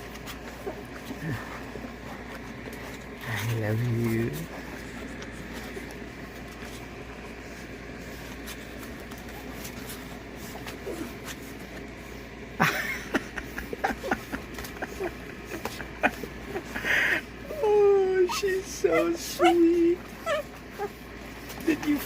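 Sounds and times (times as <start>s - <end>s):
puppy squeak: 20.2s - 20.5s.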